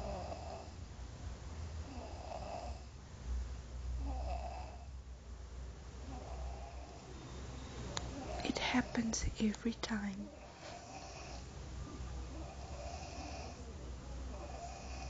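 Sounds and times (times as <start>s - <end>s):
man snoring: 0.0s - 0.8s, 1.8s - 2.9s, 4.0s - 4.9s, 6.1s - 6.9s, 10.4s - 11.5s, 12.4s - 13.7s, 14.3s - 15.0s.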